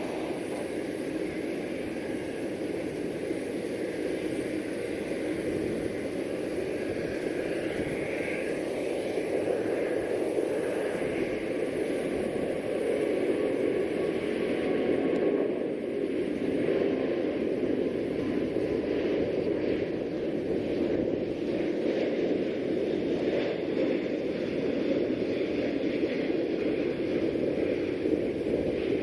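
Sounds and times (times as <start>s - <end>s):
jet engines at takeoff: 0.0s - 29.0s.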